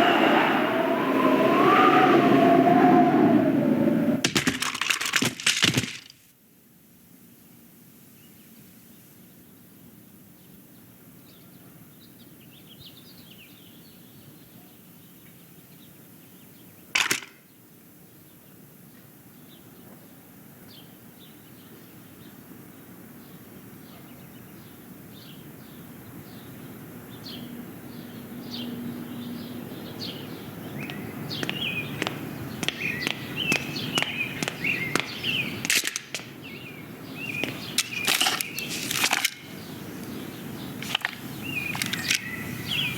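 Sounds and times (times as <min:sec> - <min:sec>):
birds chirping: 0:00.0 - 0:04.2, 0:19.6 - 0:42.9
background hiss: 0:33.2 - 0:42.9.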